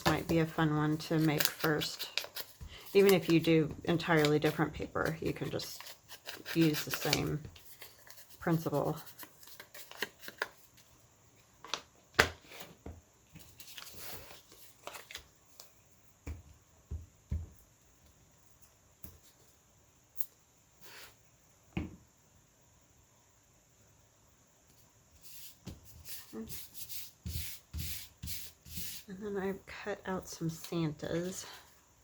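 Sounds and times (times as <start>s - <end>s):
paper rustling: 0.0s - 10.9s, 13.4s - 15.3s.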